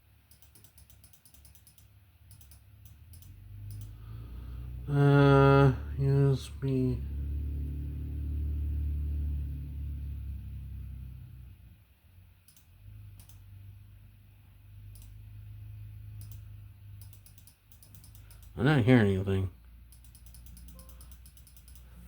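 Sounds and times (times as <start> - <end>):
sharp computer clicks: 0.2 - 4.0, 12.4 - 13.5, 14.9 - 15.2, 16.2 - 18.6, 19.8 - 22.0
low hum: 2.3 - 22.0.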